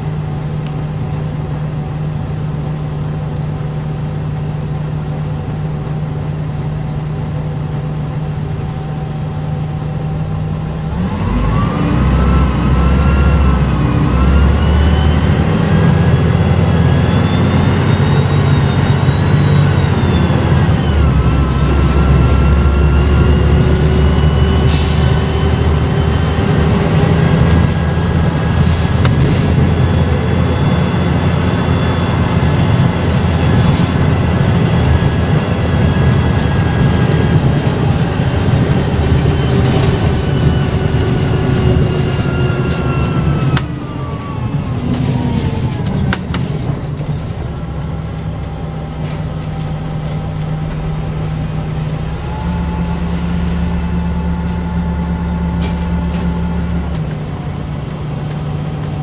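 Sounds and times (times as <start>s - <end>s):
bus diesel engine: 0.0s - 59.0s
gearbox whine: 4.6s - 59.0s.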